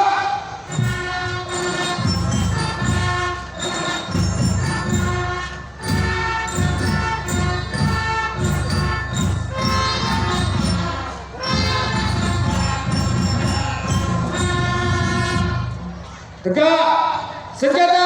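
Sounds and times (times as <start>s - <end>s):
band playing a melody: 0.5s - 16.4s
bright bell-like ring: 0.7s - 14.9s
steady drum beat: 0.7s - 16.4s.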